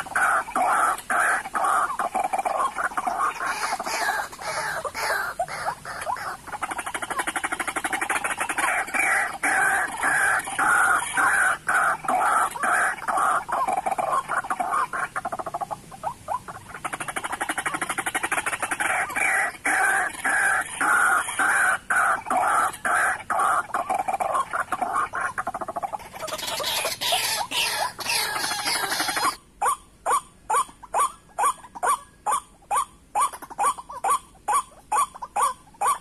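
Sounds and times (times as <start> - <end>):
waterhens calling harshly: 0.0 - 36.0.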